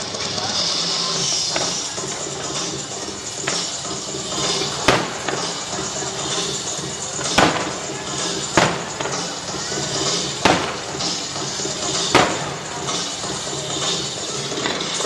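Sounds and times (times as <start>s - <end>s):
music: 0.0s - 15.0s
firework bursts with rumbling echo: 1.4s - 15.0s.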